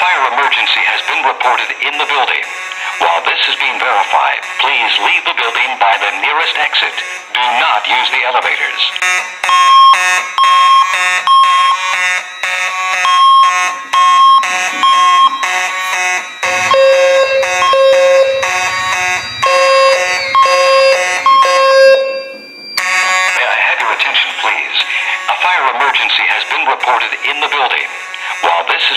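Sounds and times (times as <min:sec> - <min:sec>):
fire alarm pulsing tone: 0:09.0 - 0:23.4.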